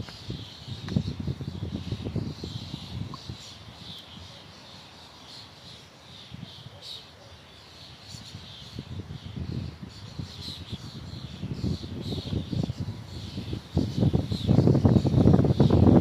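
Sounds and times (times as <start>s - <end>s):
gusty wind rumble: 0.0s - 4.0s, 8.2s - 16.0s
small birds chirping: 0.0s - 16.0s.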